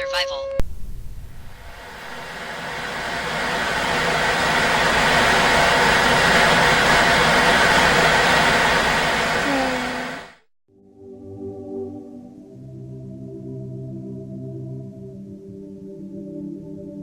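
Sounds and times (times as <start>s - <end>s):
loud rushing noise: 0.6s - 10.5s.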